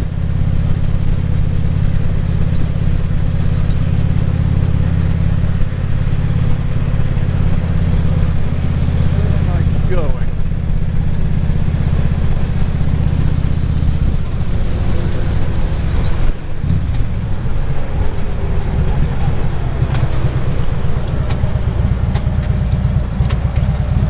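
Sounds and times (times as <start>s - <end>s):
motorcycle engine running: 0.0s - 24.0s
wind noise on microphone: 10.4s - 24.0s.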